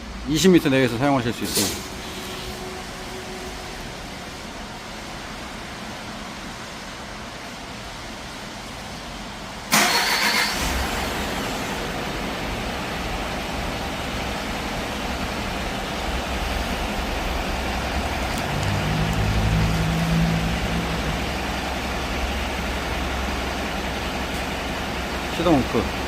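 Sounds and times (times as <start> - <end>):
diesel truck engine starting and idling: 0.0 - 26.0
low hum: 10.9 - 25.3.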